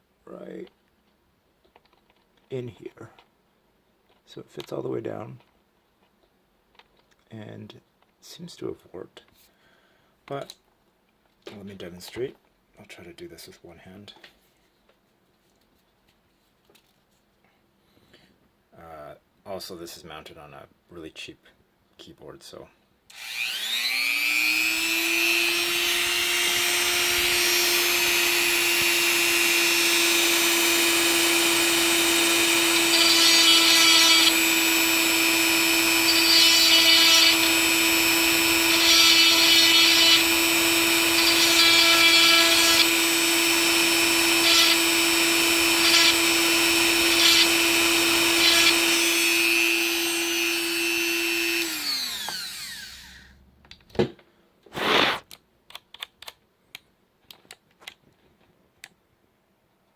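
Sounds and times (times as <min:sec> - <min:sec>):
rotary tool whining: 0:23.1 - 0:53.4
rotary tool grinding plastic: 0:24.7 - 0:53.3.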